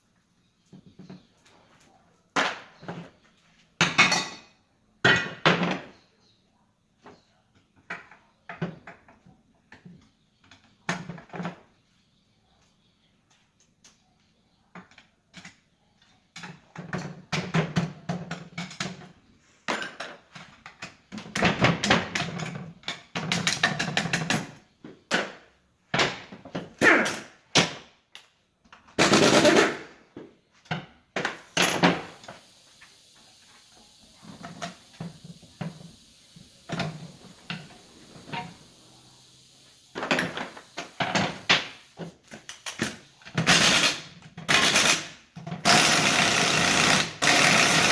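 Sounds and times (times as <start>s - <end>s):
metal parts and tools clanking: 19.6s - 20.5s.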